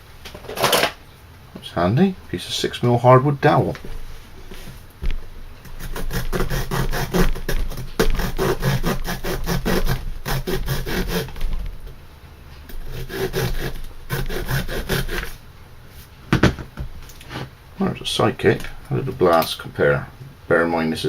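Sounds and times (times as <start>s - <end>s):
small saw cutting wood: 5.6s - 11.4s, 12.7s - 15.4s.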